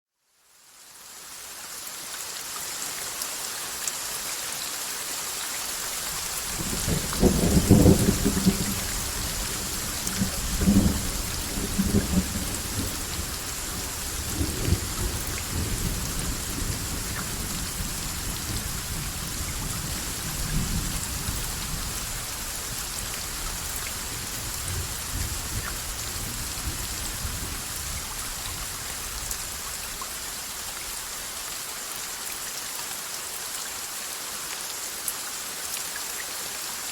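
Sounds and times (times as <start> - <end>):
steady rain hissing: 0.2 - 36.9
thunder rumbling: 6.5 - 22.0.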